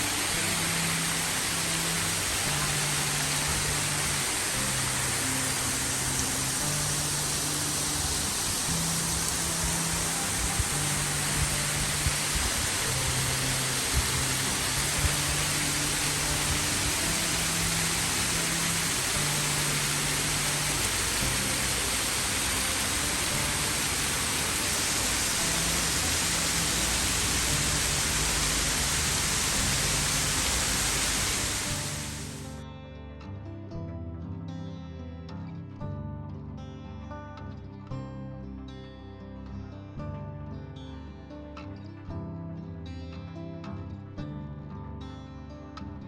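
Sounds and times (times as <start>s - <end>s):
loud rushing hiss: 0.0s - 32.5s
soft low music notes: 0.0s - 46.0s.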